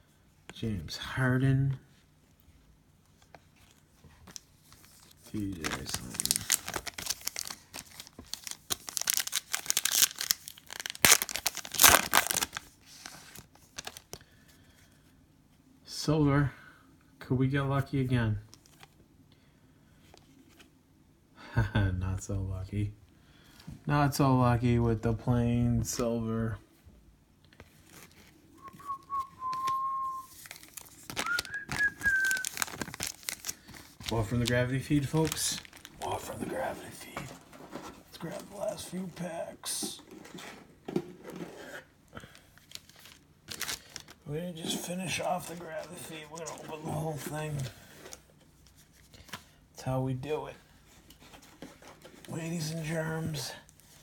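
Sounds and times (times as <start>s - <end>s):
card pack wrapper tearing: 5.2s - 14.2s, 29.6s - 36.6s, 42.3s - 47.6s
person whistling: 28.6s - 30.3s, 31.2s - 32.6s.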